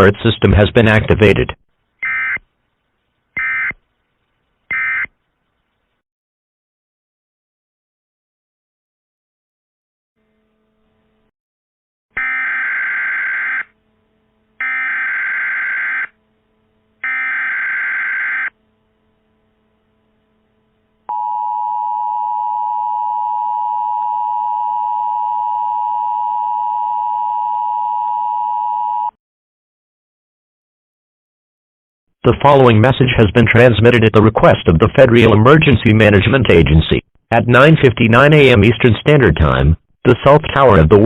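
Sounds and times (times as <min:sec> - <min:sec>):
two-tone attention signal: 0:21.1 - 0:29.1.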